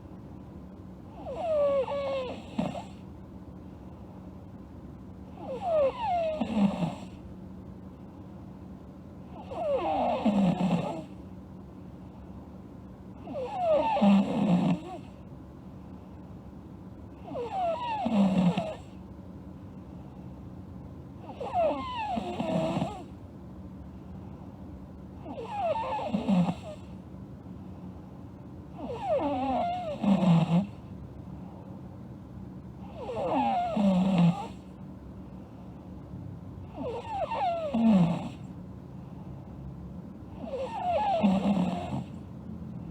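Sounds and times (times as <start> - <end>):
girl snoring with whistle: 1.2 - 2.9, 5.4 - 7.1, 9.4 - 11.1, 13.2 - 15.0, 17.2 - 18.8, 21.3 - 23.1, 25.2 - 26.8, 28.8 - 30.7, 32.9 - 34.6, 36.8 - 38.4, 40.4 - 42.2.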